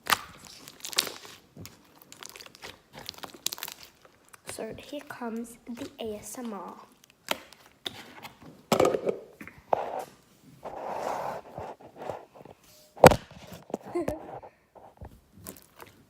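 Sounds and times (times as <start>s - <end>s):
slime squelching and popping: 0.0s - 9.7s, 15.3s - 16.0s.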